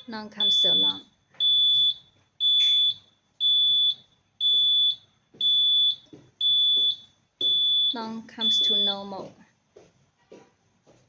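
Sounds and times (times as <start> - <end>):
high-pitched electronic alarm beep: 0.4 - 9.0.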